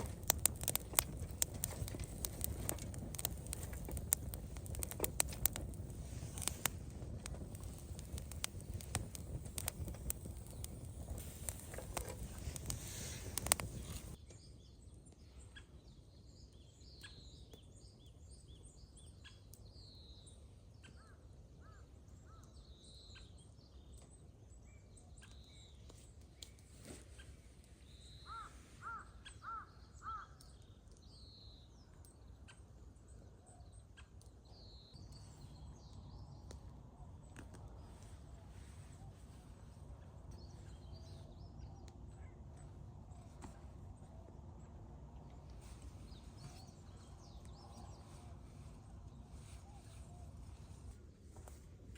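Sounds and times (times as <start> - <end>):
loud crackling noise: 0.0 - 14.2
small birds chirping: 0.0 - 51.7
crows cawing: 28.3 - 30.4.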